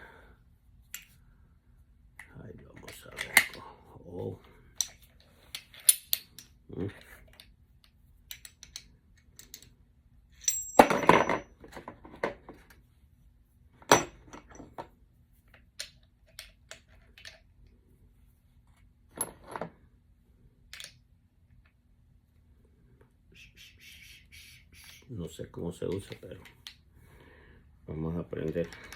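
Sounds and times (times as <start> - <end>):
metal tool clinking and knocking: 4.8 - 6.6, 10.4 - 12.4, 13.8 - 14.9
sharp ringing metal clink: 10.4 - 11.4.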